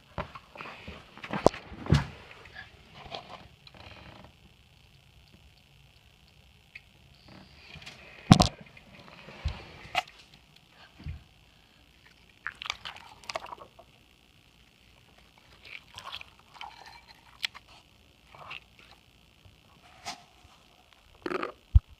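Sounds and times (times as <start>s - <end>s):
slime squelching and popping: 12.0s - 13.9s.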